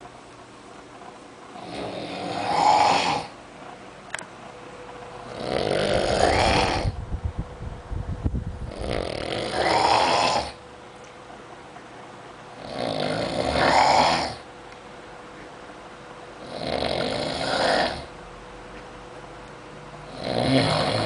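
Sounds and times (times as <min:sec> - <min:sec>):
man snoring heavily: 0:01.6 - 0:03.3, 0:05.2 - 0:07.0, 0:08.7 - 0:10.6, 0:12.6 - 0:14.5, 0:16.4 - 0:18.1, 0:20.1 - 0:21.0.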